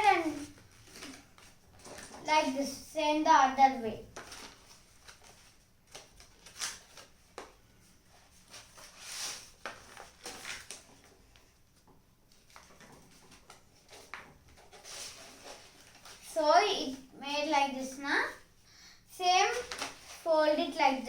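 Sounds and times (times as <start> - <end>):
paper being folded and creased: 0.0 - 2.6, 4.1 - 16.4, 19.4 - 20.3.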